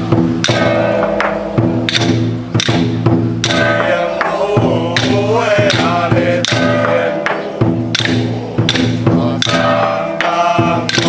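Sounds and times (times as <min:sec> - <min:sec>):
held low drone tones: 0:00.0 - 0:11.0
percussion on an even beat: 0:00.0 - 0:11.0
chanted melodic line: 0:03.5 - 0:11.0.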